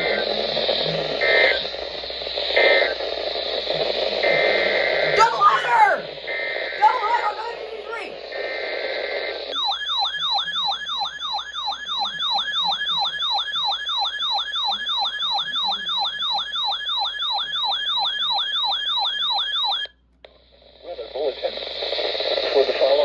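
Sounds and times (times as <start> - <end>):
weather radio siren alarm: 0.0 - 8.7, 9.5 - 20.0
radio hiss: 0.0 - 13.7, 14.3 - 16.6, 20.3 - 23.0.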